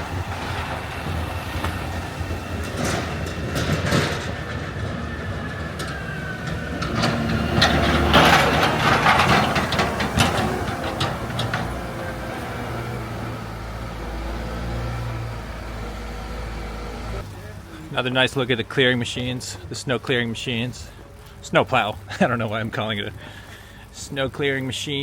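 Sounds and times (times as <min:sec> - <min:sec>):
clanks and scrapes: 0:00.0 - 0:17.3
snow plow engine droning: 0:00.0 - 0:25.0.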